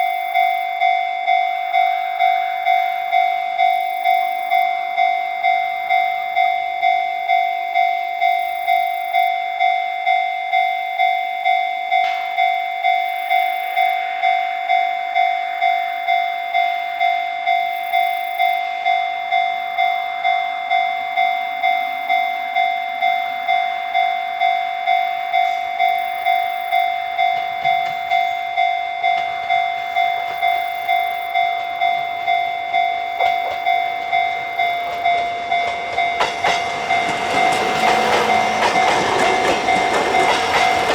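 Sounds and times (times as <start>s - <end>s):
level crossing bell ringing: 26.4s - 40.9s.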